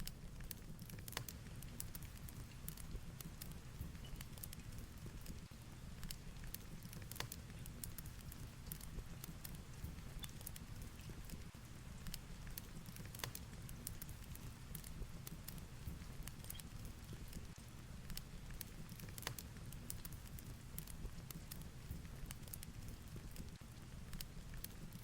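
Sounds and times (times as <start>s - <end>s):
fireplace crackling and popping: 0.0s - 25.0s.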